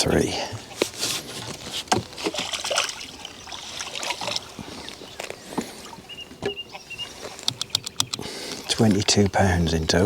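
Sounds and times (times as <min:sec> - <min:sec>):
water splashing and dripping: 0:01.9 - 0:06.6.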